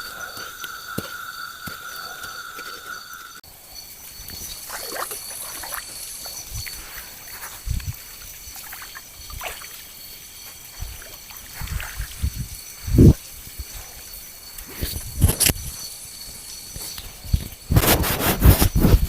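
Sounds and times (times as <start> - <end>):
night insects trilling: 0.0 - 19.0
water sloshing around raft: 4.3 - 12.3.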